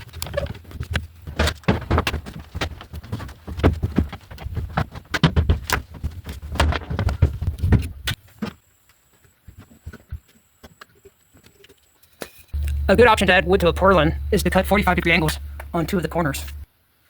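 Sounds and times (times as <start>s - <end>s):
faint high steady tone: 12.6s - 16.7s
low rumble: 12.6s - 16.7s.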